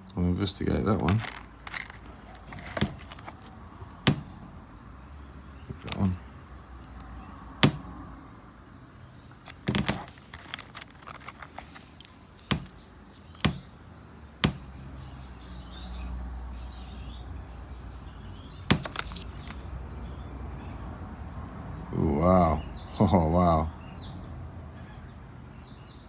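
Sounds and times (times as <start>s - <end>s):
stones clicking on hard surface: 9.4s - 13.6s, 18.7s - 19.6s.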